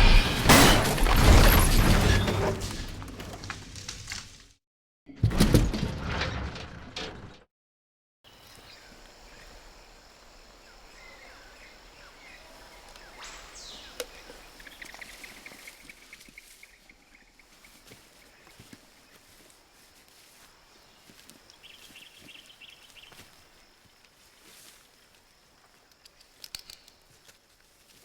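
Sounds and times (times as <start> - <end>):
loud crashing burst: 0.0 - 3.0
bird chirps: 10.8 - 18.6, 20.8 - 23.3.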